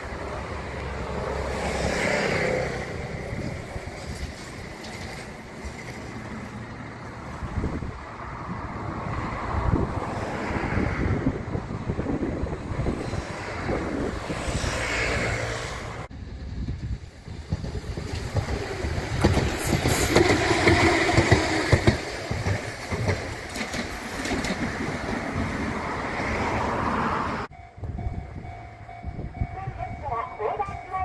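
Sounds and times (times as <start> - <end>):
train wheels clicking on rails: 0.2 - 6.9, 16.7 - 26.6.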